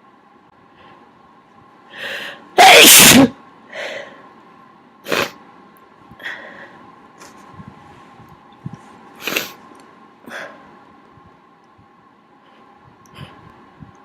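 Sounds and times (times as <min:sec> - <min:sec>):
person sneezing: 0:02.6 - 0:03.3
person sniffing: 0:09.2 - 0:09.6.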